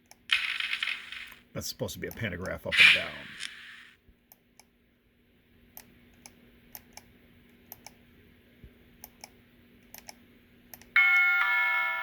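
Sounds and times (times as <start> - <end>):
speaker hum and hiss: 0.3 - 4.2
computer mouse clicks: 5.8 - 7.1, 7.7 - 8.0, 9.0 - 10.9.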